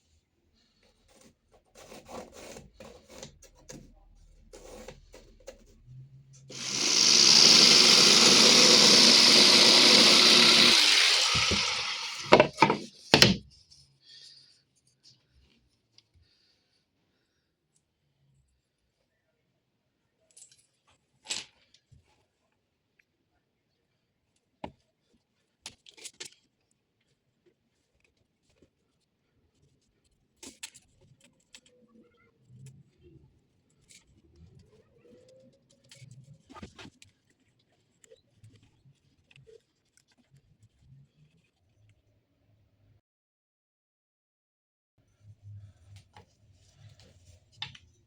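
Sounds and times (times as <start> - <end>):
scratchy handling noises: 0.6 - 13.2.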